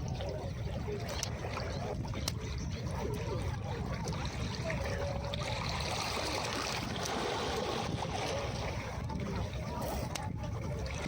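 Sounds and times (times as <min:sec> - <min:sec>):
sea waves washing on beach: 0:00.0 - 0:11.0.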